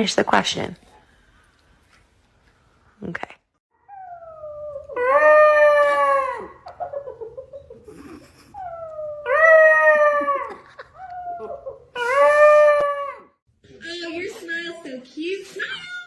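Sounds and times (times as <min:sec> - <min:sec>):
dog howling: 0:03.8 - 0:06.7, 0:08.6 - 0:13.4
dog whining: 0:03.8 - 0:07.0, 0:07.8 - 0:13.3.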